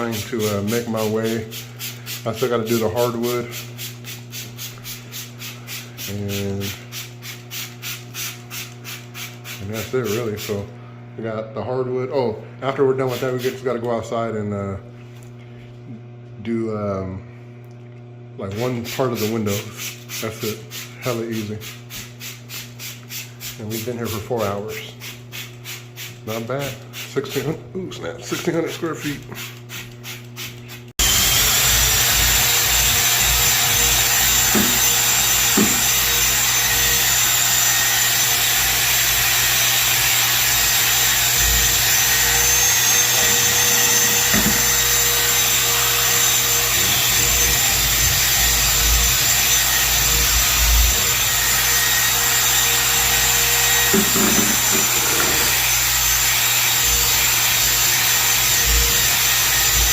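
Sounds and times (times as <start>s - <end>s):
electric machine motor whine: 31.0s - 59.9s.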